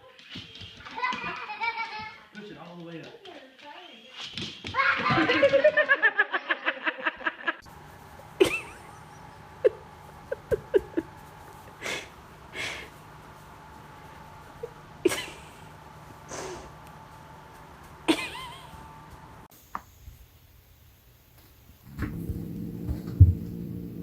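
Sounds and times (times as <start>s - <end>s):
breathy puffs: 11.6s - 13.1s, 16.1s - 16.8s.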